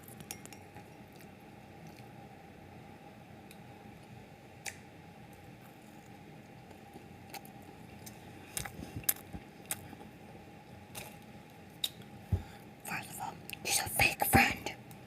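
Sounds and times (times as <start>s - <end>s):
chewing snack cake: 0.0s - 2.4s, 3.4s - 12.1s, 13.3s - 13.6s
faint steady hum: 0.0s - 15.0s.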